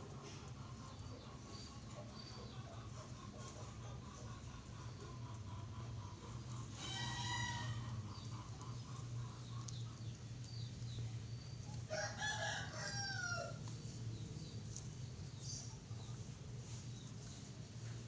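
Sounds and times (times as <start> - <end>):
rooster crowing: 6.8 - 8.0, 11.9 - 13.6.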